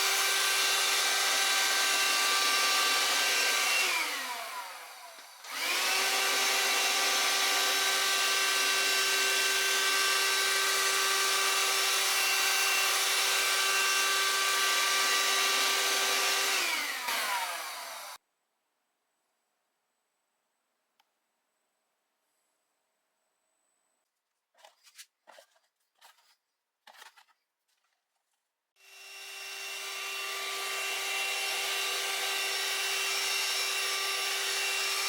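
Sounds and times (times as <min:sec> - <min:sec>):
handheld vacuum cleaner whining: 0:00.0 - 0:18.2, 0:28.8 - 0:35.0.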